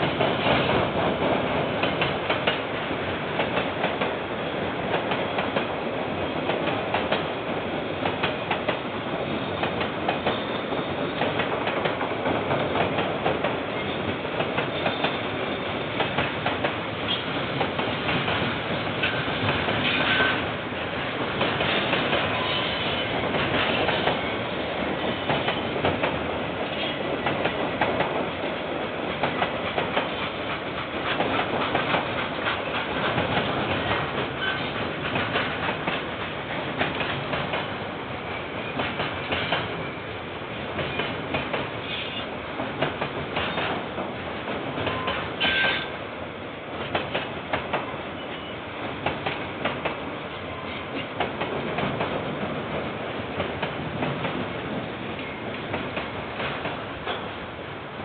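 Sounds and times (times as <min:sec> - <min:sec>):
train wheels clattering: 0:08.0 - 0:37.8, 0:38.4 - 0:40.0, 0:40.7 - 0:46.0.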